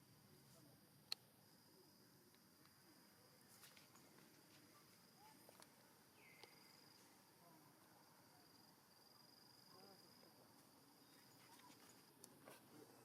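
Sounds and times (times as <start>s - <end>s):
faint clicks: 6.3s - 6.6s.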